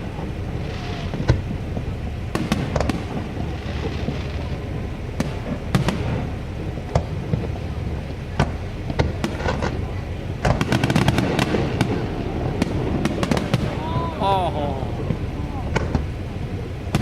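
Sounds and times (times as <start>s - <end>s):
fireworks bangs: 0.0s - 17.0s
fireworks crackle: 0.0s - 17.0s
low rumble: 0.0s - 17.0s.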